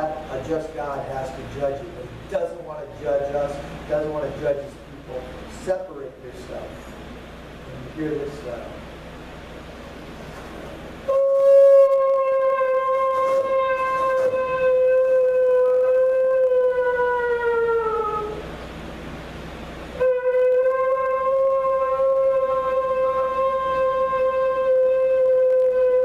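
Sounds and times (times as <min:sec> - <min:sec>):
shofar blast: 0:11.1 - 0:18.4, 0:20.0 - 0:26.0.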